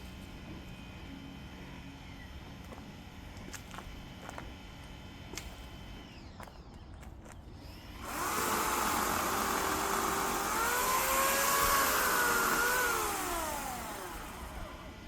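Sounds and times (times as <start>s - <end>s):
electric chainsaw whining: 7.6s - 15.0s.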